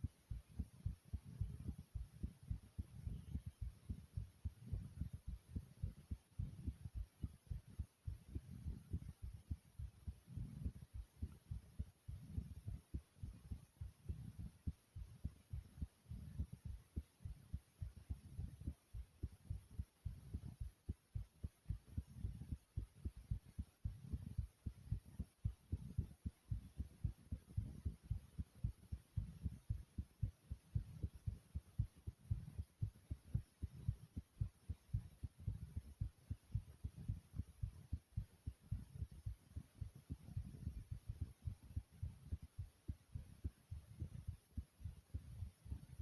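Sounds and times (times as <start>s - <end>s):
fast pounding heartbeat: 0.0s - 46.0s.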